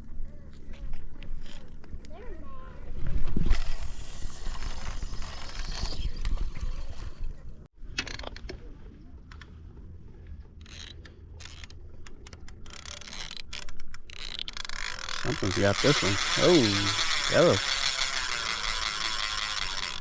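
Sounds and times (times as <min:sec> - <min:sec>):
fishing reel clicking: 0:03.5 - 0:06.3, 0:10.6 - 0:20.0.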